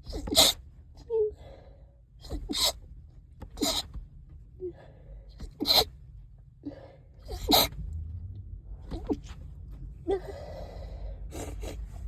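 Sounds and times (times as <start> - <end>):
congested person sneezing: 0.0 - 0.6, 2.2 - 2.8, 3.5 - 4.0, 5.4 - 5.9, 7.2 - 7.8.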